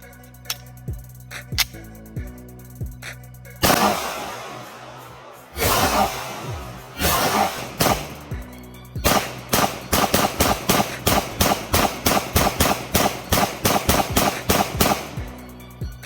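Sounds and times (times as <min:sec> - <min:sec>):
pistol shots in rapid string: 0:03.6 - 0:15.6.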